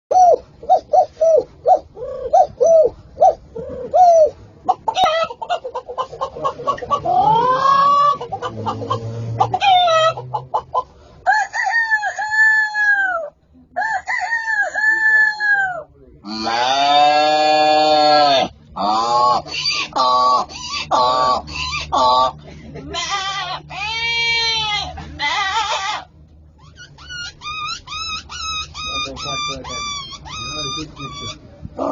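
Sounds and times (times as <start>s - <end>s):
person imitating hen clucking: 1.9s - 10.9s, 14.8s - 26.1s
person imitating rooster crowing: 7.1s - 8.2s.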